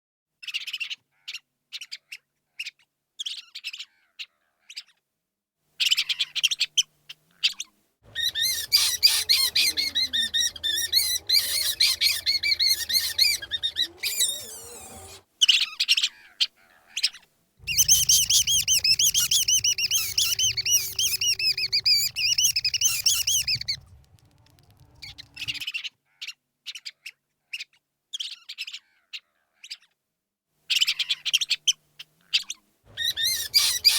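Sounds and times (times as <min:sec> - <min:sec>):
rat squeaking: 0:08.1 - 0:15.2, 0:17.6 - 0:25.6, 0:32.9 - 0:33.9.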